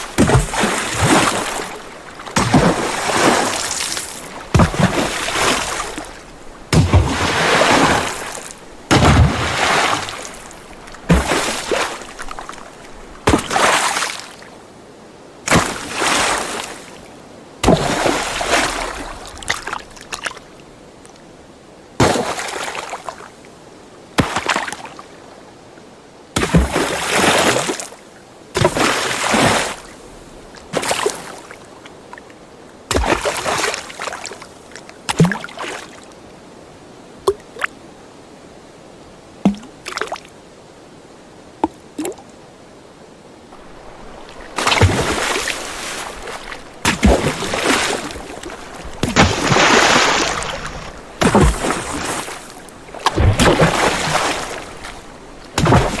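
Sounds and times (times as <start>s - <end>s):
water splashing from swimming: 0.0s - 14.3s, 17.6s - 20.3s, 32.9s - 34.3s, 35.1s - 35.9s, 39.4s - 40.2s, 43.6s - 56.0s
water dripping: 39.4s - 40.2s, 43.6s - 56.0s.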